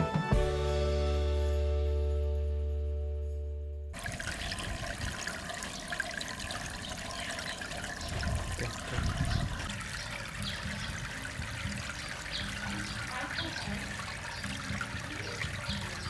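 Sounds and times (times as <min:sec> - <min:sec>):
small waterfall trickling: 0:04.0 - 0:16.0.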